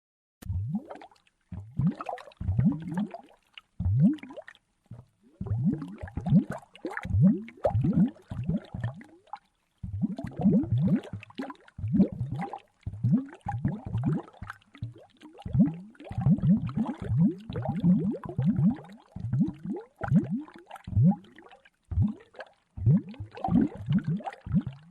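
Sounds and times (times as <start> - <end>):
underwater bubbles rising in pitch: 0.4 - 24.9.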